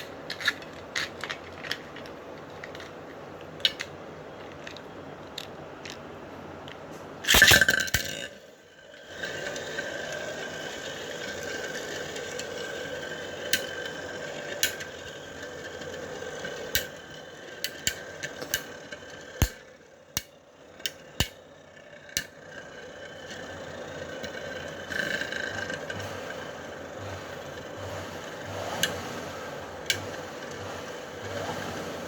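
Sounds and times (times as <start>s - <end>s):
spinning tops clacking together: 7.2s - 8.3s, 14.5s - 15.0s, 16.6s - 21.4s
spinning tops whirring: 7.3s - 32.0s.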